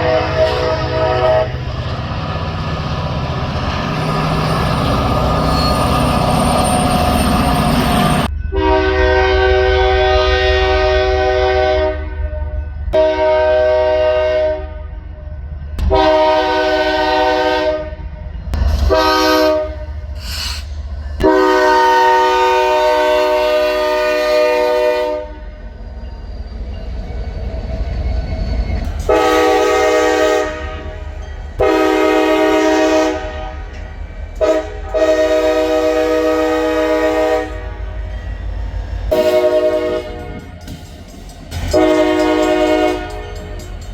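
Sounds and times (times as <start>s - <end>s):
locomotive air horn blasts: 0.0s - 1.6s, 8.0s - 15.0s, 15.8s - 18.1s, 18.7s - 20.1s, 21.2s - 25.6s, 29.0s - 31.0s, 31.6s - 33.8s, 34.4s - 38.1s, 39.1s - 40.5s, 41.5s - 43.7s
train rumbling on rails: 0.0s - 43.9s.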